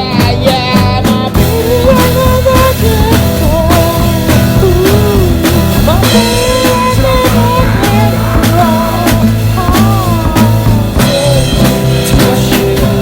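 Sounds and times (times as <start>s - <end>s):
rock band music: 3.1s - 13.0s.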